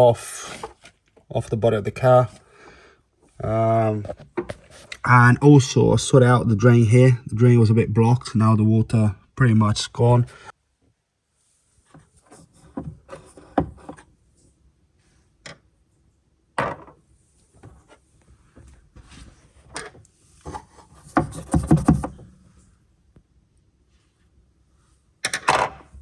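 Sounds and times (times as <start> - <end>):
hands knocking and scraping trim: 20.5 - 22.4.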